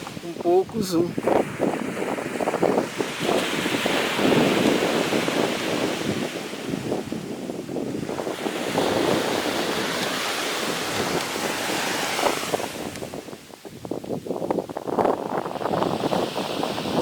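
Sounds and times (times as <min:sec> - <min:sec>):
sea surf washing onto beach: 0:00.0 - 0:17.0
wind buffeting microphone: 0:00.0 - 0:17.0.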